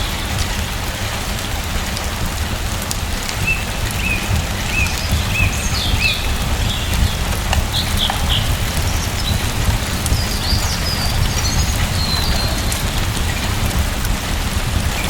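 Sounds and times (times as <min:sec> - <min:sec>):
steady rain falling: 0:00.0 - 0:15.0
small bird chirping: 0:03.5 - 0:13.5.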